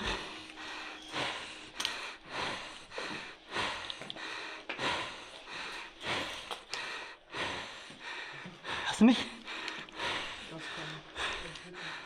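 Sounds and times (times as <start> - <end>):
fast heavy breathing: 0.0 - 12.0.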